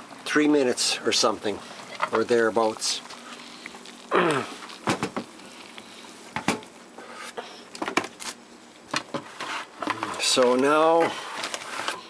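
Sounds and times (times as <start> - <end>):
kettle boiling hiss: 0.0 - 7.0.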